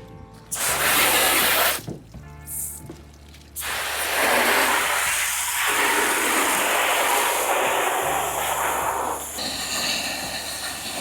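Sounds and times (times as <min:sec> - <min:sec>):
loud rushing hiss: 0:00.5 - 0:01.8, 0:03.6 - 0:11.0.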